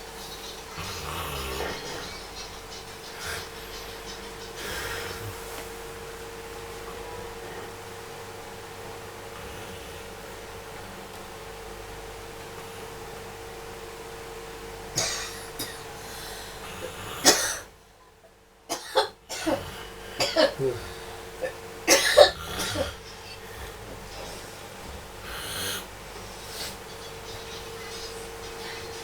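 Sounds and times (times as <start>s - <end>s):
person coughing: 15.0s - 16.0s, 17.2s - 17.7s, 18.7s - 23.9s.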